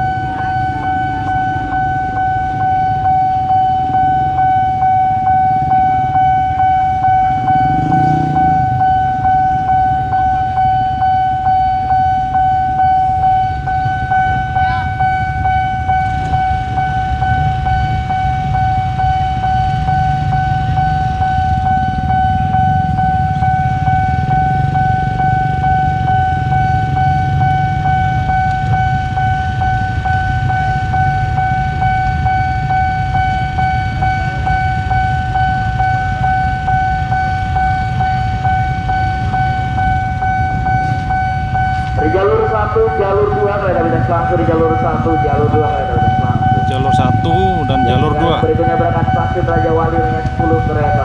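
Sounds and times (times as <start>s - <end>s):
level crossing alarm high tone: 0.0s - 51.0s
train rumbling over crossing: 7.0s - 10.5s.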